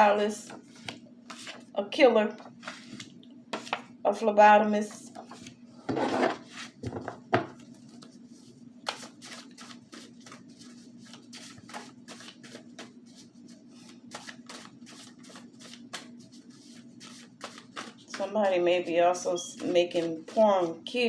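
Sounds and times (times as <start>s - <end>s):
faint steady hum: 0.0s - 21.0s
cards clicking and tapping: 8.8s - 10.4s.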